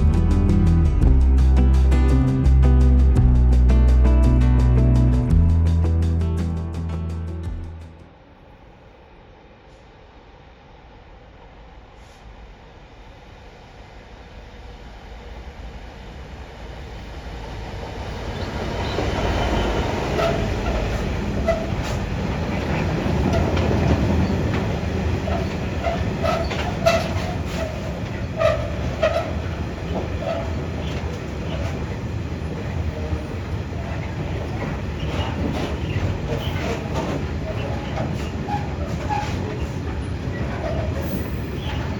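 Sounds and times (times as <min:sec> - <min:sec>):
diesel locomotive passing: 0:00.0 - 0:41.9
wheel squeals: 0:18.4 - 0:32.0, 0:34.0 - 0:41.9
wagons clattering over rail joints: 0:18.4 - 0:41.9.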